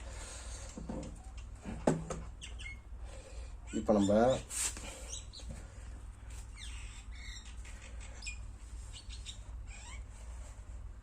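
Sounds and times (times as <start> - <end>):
low electrical hum: 0.0 - 11.0
small birds chirping: 0.3 - 10.6.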